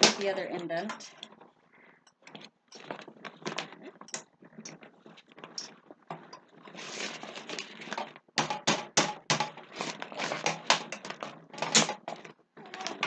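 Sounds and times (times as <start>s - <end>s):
scraping rustle: 0.0s - 8.4s, 9.6s - 13.0s
sharp plastic clicks and knocks: 7.6s - 13.0s.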